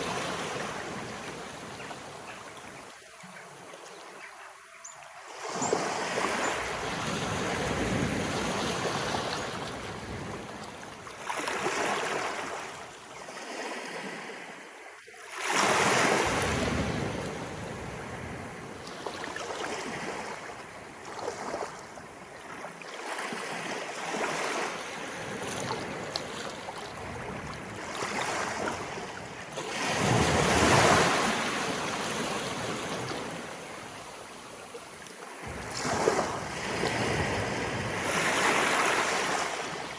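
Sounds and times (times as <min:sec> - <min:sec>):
sea waves washing ashore: 0:00.0 - 0:04.2, 0:05.2 - 0:39.9
water splashes: 0:18.8 - 0:39.9.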